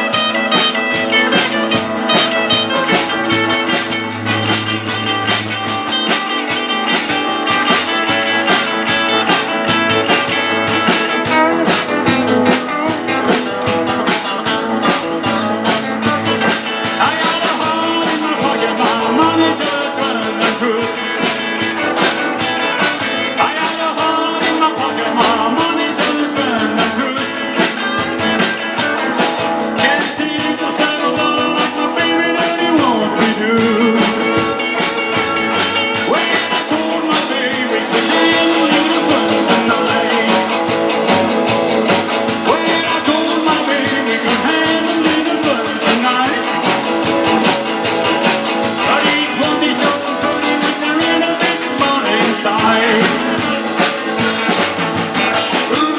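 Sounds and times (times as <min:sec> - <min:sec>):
rock song with singing: 0:00.0 - 0:55.9
steady drum beat: 0:00.0 - 0:55.9.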